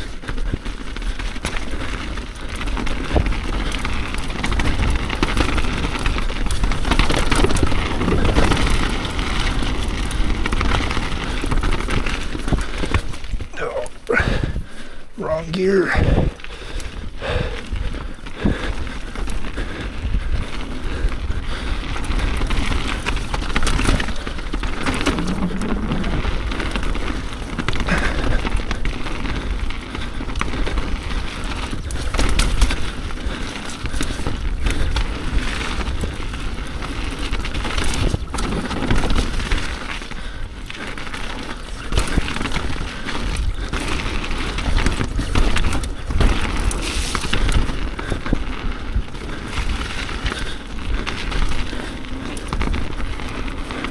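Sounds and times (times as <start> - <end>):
bike knocks and rattles: 0.0 - 13.5, 17.6 - 53.9
bike tyre noise: 0.0 - 53.9
wind rumble: 15.9 - 30.4.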